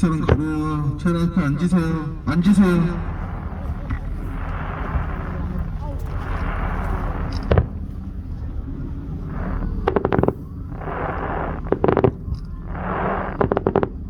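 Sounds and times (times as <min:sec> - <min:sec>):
low rumble: 0:00.0 - 0:14.0
fireworks hissing and cracking: 0:03.0 - 0:08.0.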